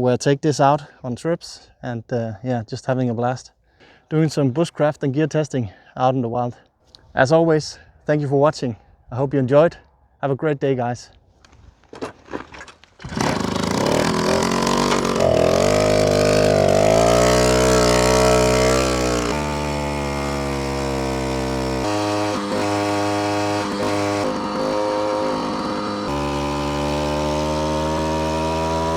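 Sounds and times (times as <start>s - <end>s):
moped engine revving: 12.9s - 28.9s.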